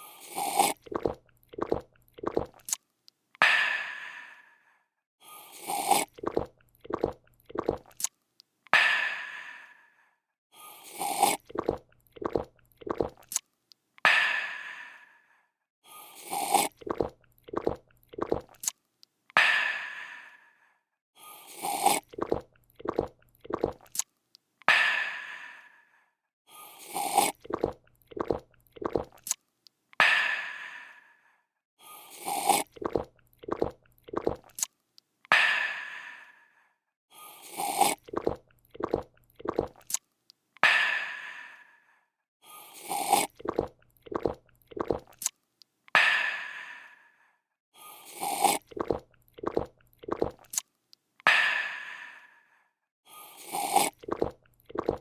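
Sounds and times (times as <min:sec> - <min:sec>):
person gulping and swallowing: 0:00.0 - 0:02.8, 0:05.7 - 0:08.1, 0:11.0 - 0:13.4, 0:16.3 - 0:18.8, 0:21.6 - 0:24.1, 0:27.0 - 0:29.4, 0:32.3 - 0:34.7, 0:37.6 - 0:40.0, 0:42.9 - 0:45.3, 0:48.2 - 0:50.6, 0:53.5 - 0:55.0.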